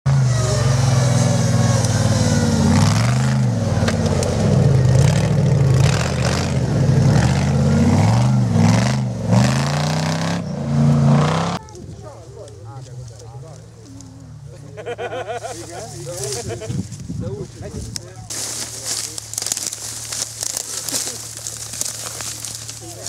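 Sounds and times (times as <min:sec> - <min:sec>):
engine revving: 0:00.1 - 0:11.6.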